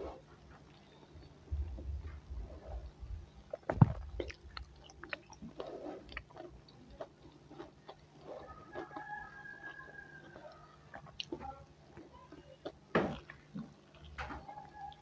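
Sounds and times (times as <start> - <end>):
chewing and biting fish: 2.8 - 15.0
wet clicks and soft crunches: 3.4 - 15.0.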